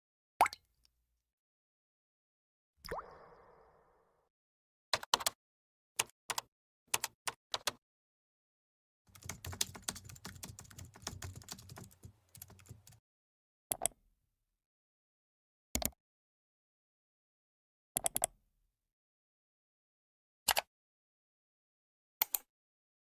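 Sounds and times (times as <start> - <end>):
computer keyboard typing: 5.0 - 5.4, 6.0 - 7.8, 9.1 - 13.0.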